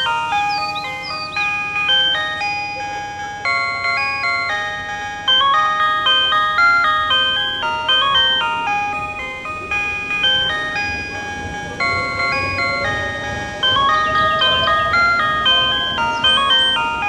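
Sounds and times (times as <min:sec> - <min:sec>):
looping electronic beeping tune: 0:00.0 - 0:03.0.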